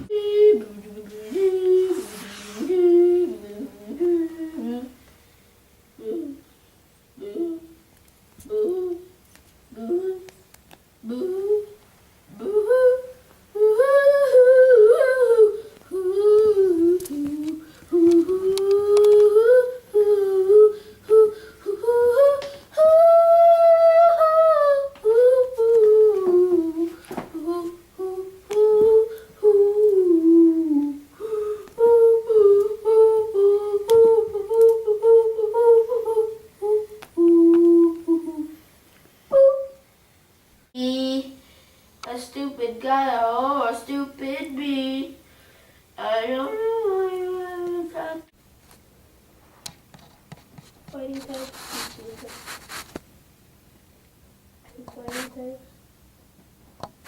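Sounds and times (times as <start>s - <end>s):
person humming a tune: 0.0s - 5.0s, 6.0s - 6.5s, 7.2s - 7.8s, 8.4s - 10.4s, 11.0s - 38.6s, 39.3s - 39.8s.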